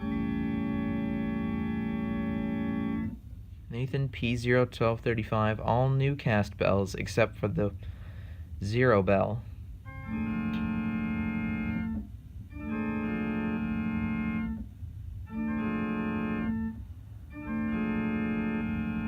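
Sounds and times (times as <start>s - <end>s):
electronic keyboard organ chord: 0.0s - 3.2s, 9.8s - 19.0s.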